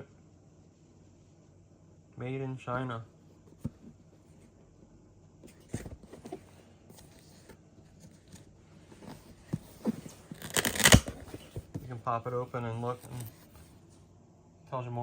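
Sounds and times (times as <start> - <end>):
cardboard scraping rustle: 5.4 - 14.0
cardboard box taps and rustles: 5.5 - 7.6, 9.0 - 12.0.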